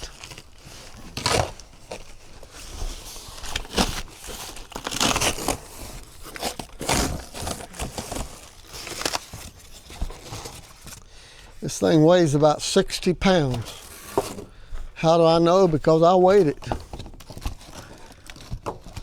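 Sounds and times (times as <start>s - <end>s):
packing material crinkling: 0.0s - 11.1s, 15.2s - 19.0s.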